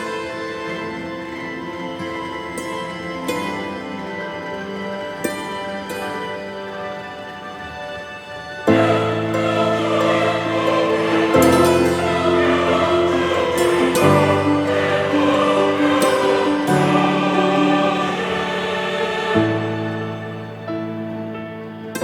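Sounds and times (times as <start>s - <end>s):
choir singing held chords: 8.5s - 21.4s.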